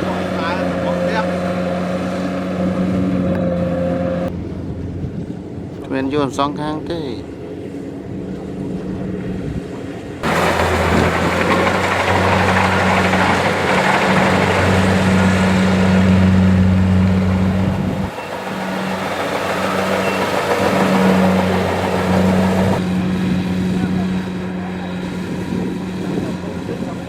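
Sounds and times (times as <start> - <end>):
combine harvester running: 7.0 - 27.0.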